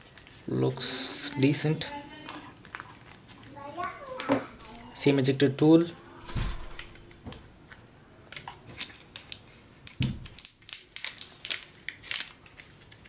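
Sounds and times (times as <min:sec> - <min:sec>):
cardboard packaging rustling: 0:00.0 - 0:05.0, 0:08.6 - 0:13.0.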